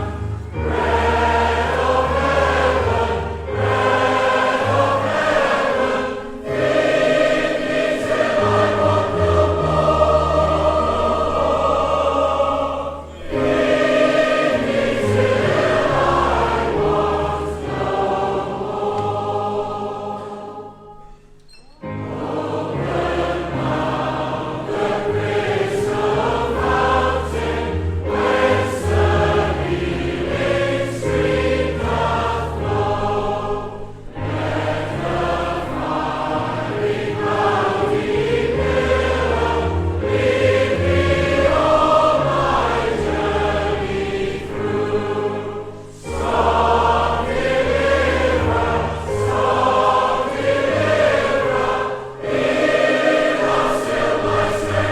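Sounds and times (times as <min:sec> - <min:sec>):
choir singing a hymn: 0:00.0 - 0:54.9.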